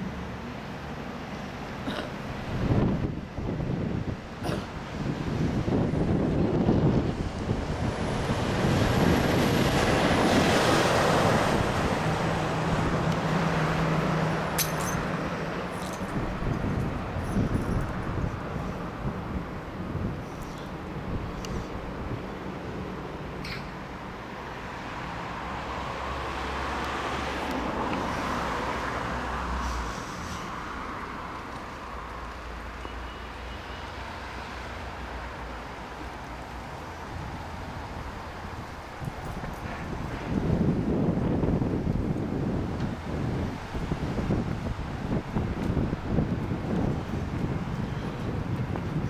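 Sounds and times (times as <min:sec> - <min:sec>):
passing vehicle rushing: 0:05.0 - 0:20.0
sharp click: 0:23.4 - 0:23.8.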